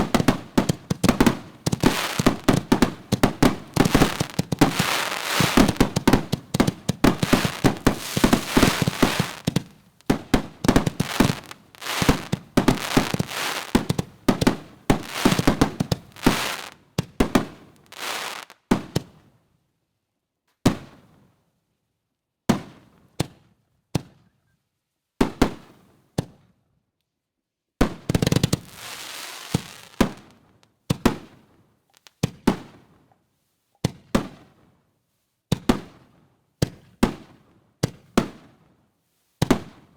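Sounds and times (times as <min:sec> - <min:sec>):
firework shells banging: 0:01.7 - 0:16.7.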